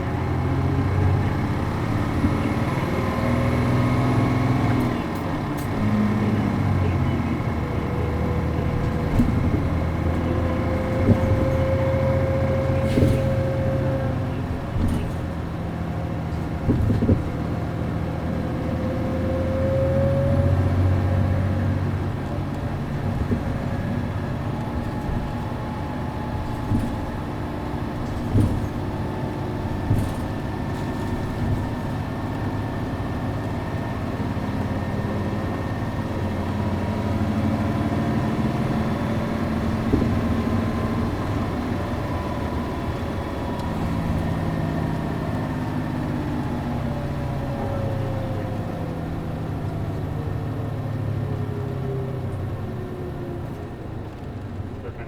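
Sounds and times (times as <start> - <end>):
bus diesel engine droning: 0.0 - 55.0
knocks from bus body: 8.6 - 11.9, 12.6 - 17.7, 22.8 - 32.4, 39.2 - 41.7.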